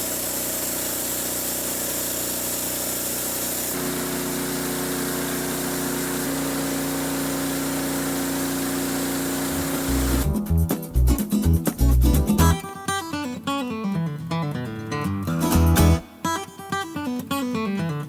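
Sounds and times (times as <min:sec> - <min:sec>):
portable sawmill running: 0:00.0 - 0:10.4.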